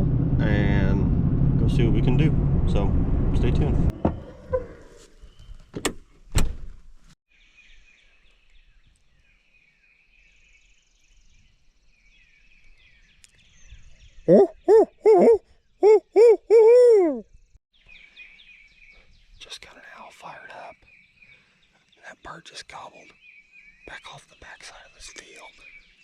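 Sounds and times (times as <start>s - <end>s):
faint songbird chirping: 4.0s - 5.8s, 7.3s - 26.0s
owl hooting: 14.3s - 17.3s.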